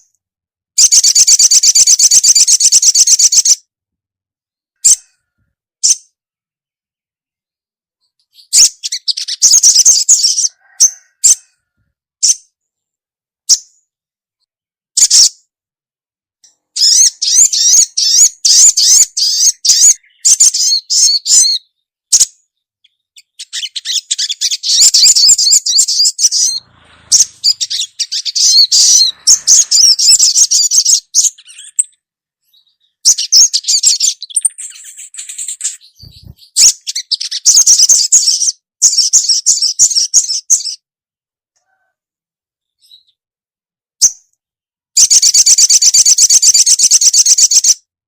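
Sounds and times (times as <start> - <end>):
bird chattering trills: 23.2 - 32.0, 32.6 - 39.3.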